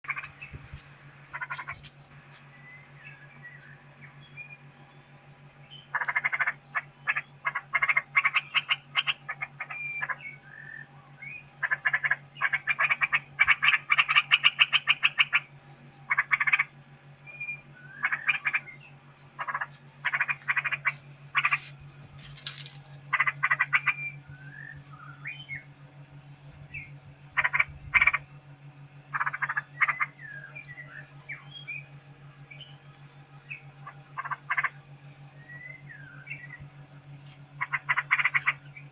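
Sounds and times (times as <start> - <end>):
steady low hum: 0.0 - 38.9
animal calls in rapid pulses: 1.3 - 1.9, 5.9 - 10.9, 11.6 - 15.5, 16.1 - 16.8, 17.9 - 18.8, 19.4 - 21.7, 23.1 - 24.8, 27.3 - 28.3, 29.1 - 30.4, 33.8 - 34.8, 37.6 - 38.7.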